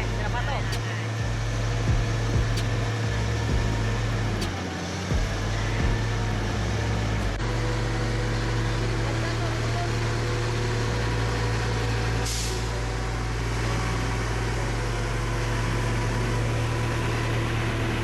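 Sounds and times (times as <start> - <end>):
truck engine running: 0.0 - 18.0.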